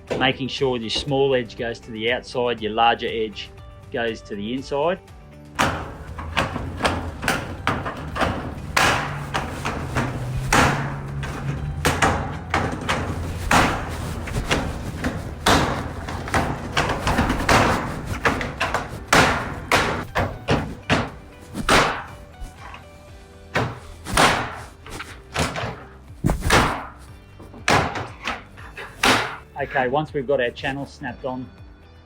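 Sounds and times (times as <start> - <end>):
knocks on metal roof sheets: 5.6 - 22.8, 23.6 - 29.4.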